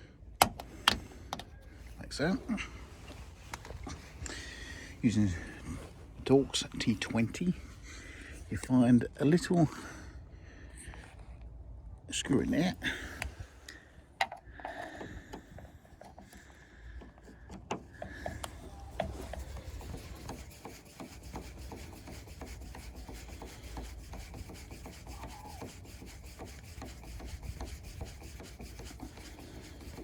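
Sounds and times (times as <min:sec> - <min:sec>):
screwdriver scraping metal screw: 0:17.0 - 0:30.0.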